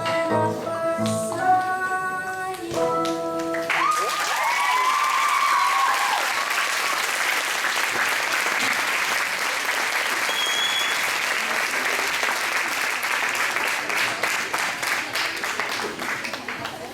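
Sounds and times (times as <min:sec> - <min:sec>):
crowd applauding: 0:03.5 - 0:16.9.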